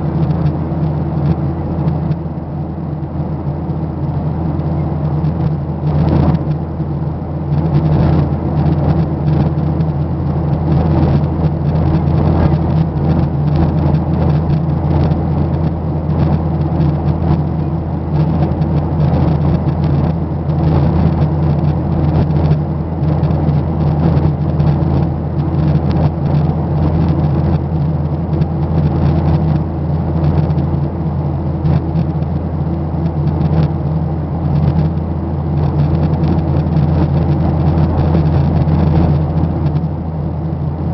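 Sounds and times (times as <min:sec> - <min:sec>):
airliner cabin drone: 0:00.0 - 0:40.9.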